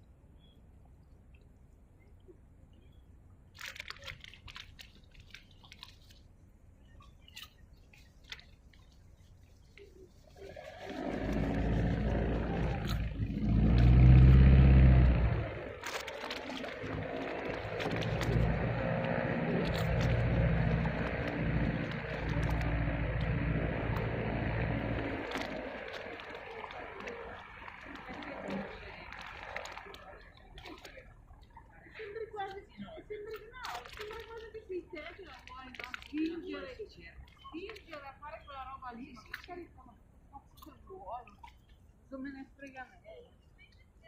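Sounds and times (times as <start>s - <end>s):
water dripping and trickling: 0.8s - 39.8s, 40.4s - 42.0s
low steady rumble: 5.0s - 42.6s
low engine drone: 9.8s - 33.0s
water hissing: 10.3s - 30.1s.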